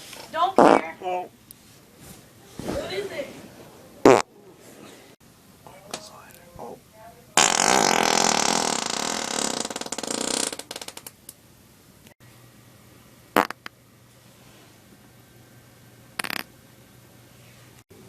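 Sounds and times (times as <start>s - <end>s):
loud farts: 0.6s - 0.9s, 4.0s - 4.3s, 7.4s - 11.0s, 13.4s - 13.7s, 16.2s - 16.5s.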